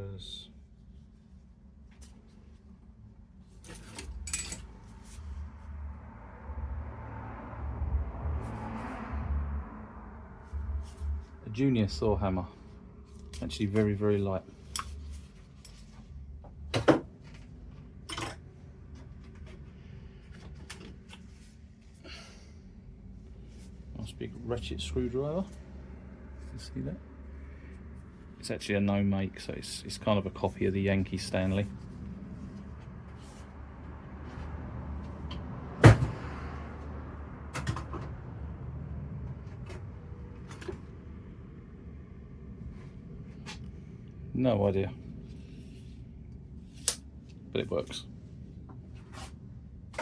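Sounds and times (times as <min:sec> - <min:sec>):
steady low hum: 0:00.0 - 0:50.0
metal tools clinking on workbench: 0:03.7 - 0:04.7, 0:18.1 - 0:18.4
light clicks and taps of tools: 0:14.7 - 0:15.8.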